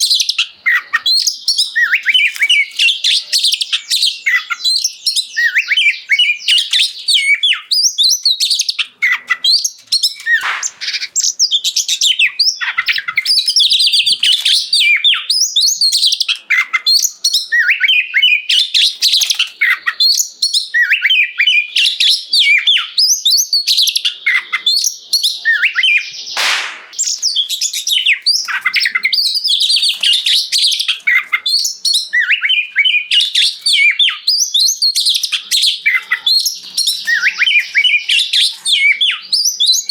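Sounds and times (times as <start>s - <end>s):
bird singing whistled phrases: 0.0s - 39.9s
bird harsh rasp: 9.0s - 11.3s.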